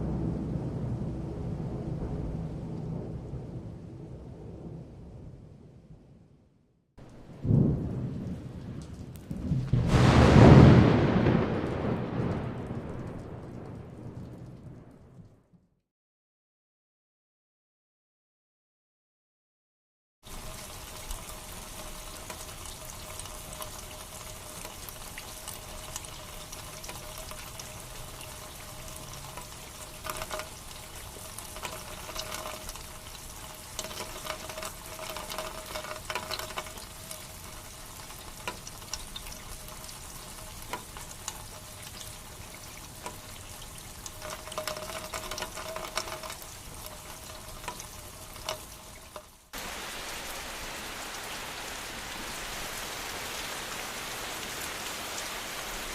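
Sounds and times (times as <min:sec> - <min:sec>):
rain hissing with drop ticks: 0:07.0 - 0:15.4, 0:20.2 - 0:55.9.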